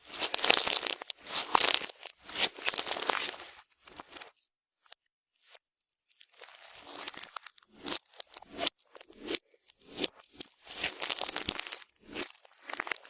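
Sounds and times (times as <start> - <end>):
slime squished by hand: 0.2 - 3.6, 10.7 - 13.0.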